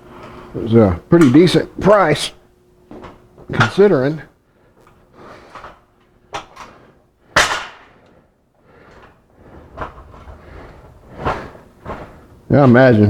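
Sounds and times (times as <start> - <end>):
scaffold parts knocking: 2.9 - 4.2, 7.4 - 8.0
loud metal clank: 7.4 - 8.0.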